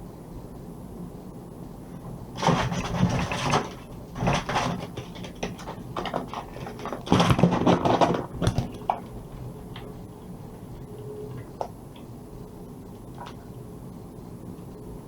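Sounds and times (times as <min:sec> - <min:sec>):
pigeons rustling at bird feeder: 0:01.9 - 0:12.1.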